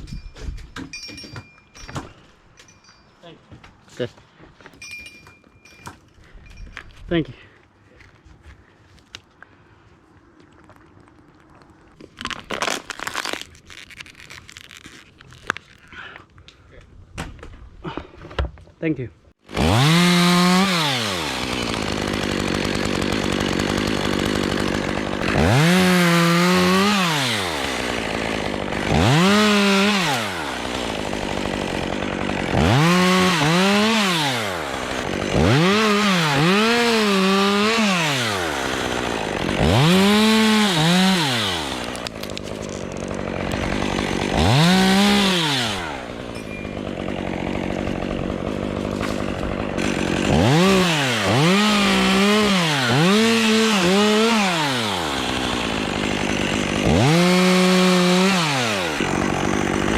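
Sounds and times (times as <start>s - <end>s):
chainsaw revving and idling: 19.4s - 59.9s.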